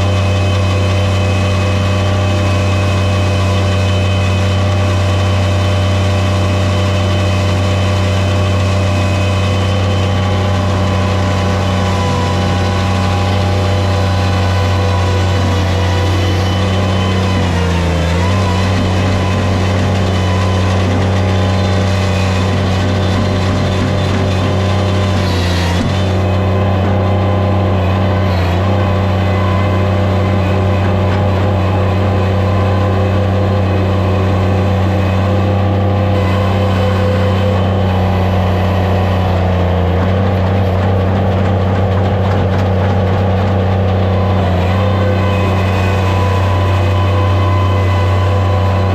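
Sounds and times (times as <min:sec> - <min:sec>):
skid steer loader engine running: 0:00.0 - 0:48.9.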